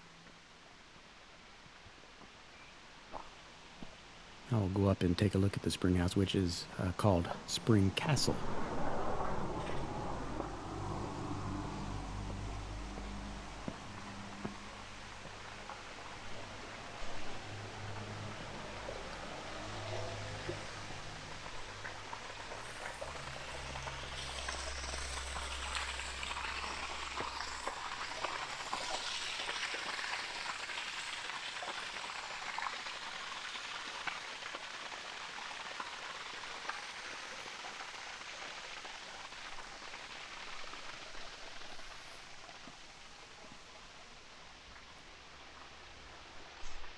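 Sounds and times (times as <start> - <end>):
water splashing and trickling: 5.6 - 43.1
low rumble: 8.2 - 15.2.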